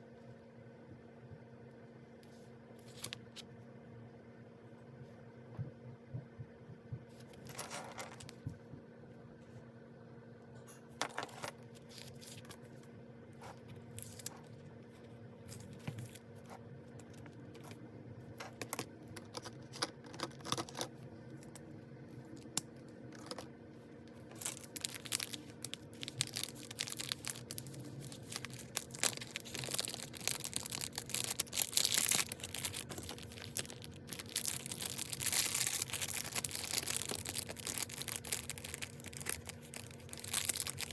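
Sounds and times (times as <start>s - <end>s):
faint steady hum: 0.0s - 40.9s
paper rustling: 24.3s - 40.9s.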